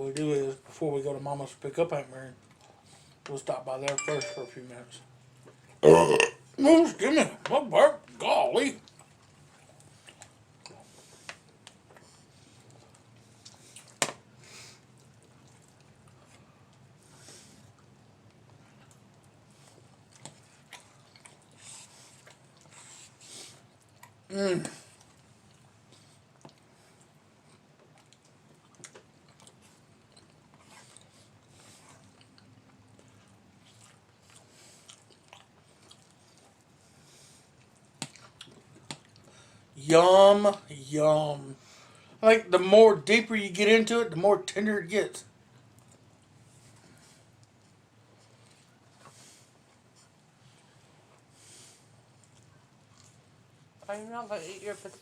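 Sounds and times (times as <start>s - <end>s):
chewing and eating: 2.4s - 3.4s, 8.7s - 39.7s, 45.3s - 53.9s.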